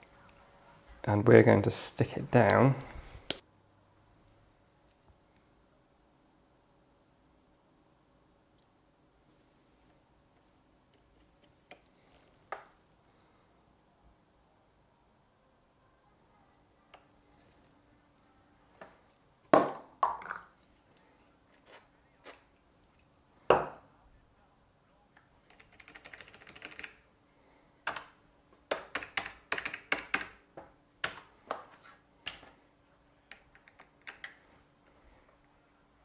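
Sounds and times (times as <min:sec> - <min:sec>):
mechanical keyboard clicks: 0:25.5 - 0:27.0, 0:28.8 - 0:30.4.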